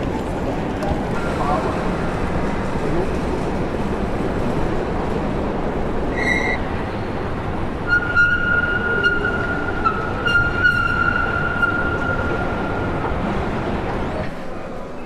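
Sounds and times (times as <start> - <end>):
train rumbling: 0.0 - 15.0
high-pitched wheel squeal: 6.1 - 13.5.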